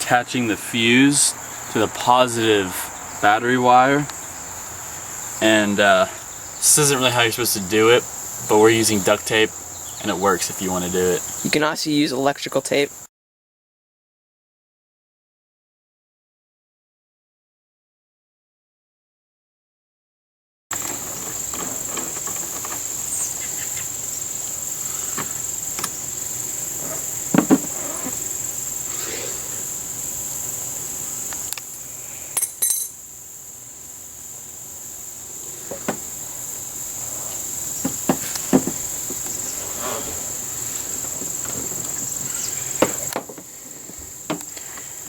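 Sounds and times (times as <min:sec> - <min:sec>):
crickets trilling: 0:00.0 - 0:13.1, 0:20.7 - 0:45.0.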